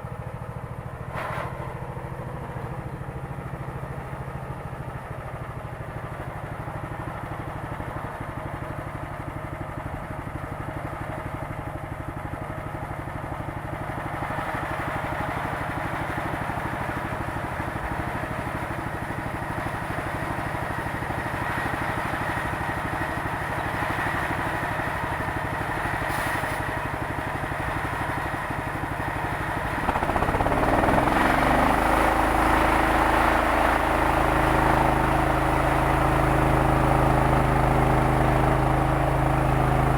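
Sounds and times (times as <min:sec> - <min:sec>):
sawmill engine running: 0:00.0 - 0:39.9
rough mechanical noise: 0:29.2 - 0:33.1.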